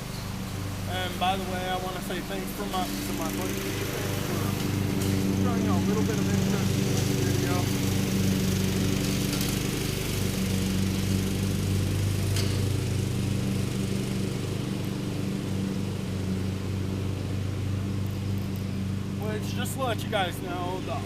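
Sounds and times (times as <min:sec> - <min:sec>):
small engine droning: 0:00.0 - 0:21.0.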